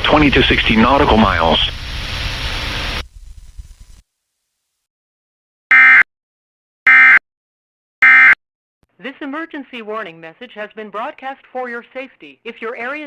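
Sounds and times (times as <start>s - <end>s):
radio static hiss: 0.0s - 4.0s.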